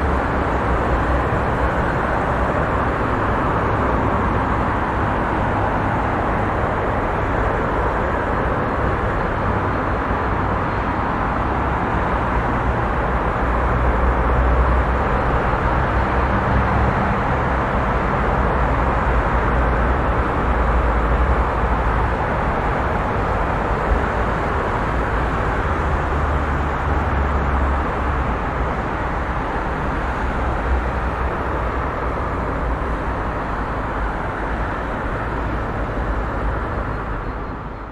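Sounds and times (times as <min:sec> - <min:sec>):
heavy highway traffic: 0:00.0 - 0:37.9.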